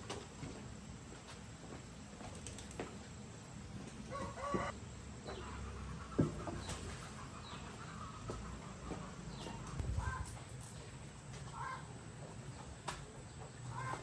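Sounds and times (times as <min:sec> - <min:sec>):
chickens clucking: 0:03.8 - 0:10.4, 0:13.2 - 0:14.0.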